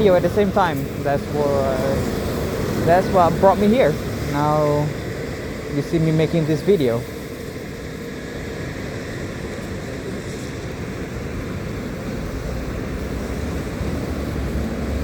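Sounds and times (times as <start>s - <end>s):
tyres on wet road: 0.0s - 15.0s.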